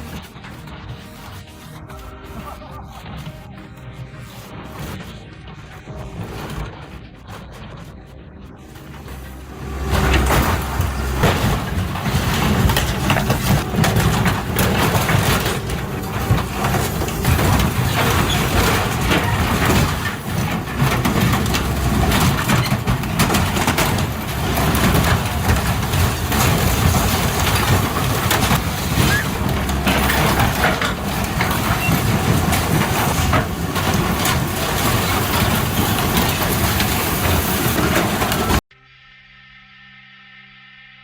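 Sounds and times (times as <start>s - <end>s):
heavy machinery running: 0.0s - 38.6s
material crushing and cracking: 8.7s - 38.6s.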